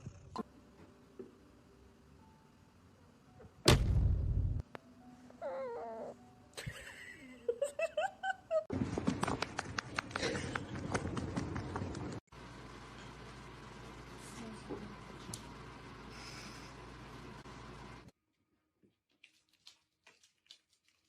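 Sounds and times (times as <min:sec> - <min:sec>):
loud thump with low rumble: 0:03.7 - 0:04.6.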